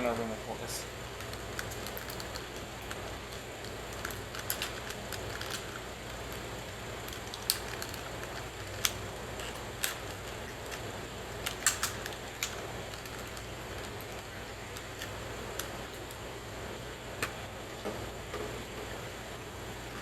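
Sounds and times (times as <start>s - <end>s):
steady low hum: 0.0s - 20.0s
sharp plastic clicks: 7.0s - 16.2s.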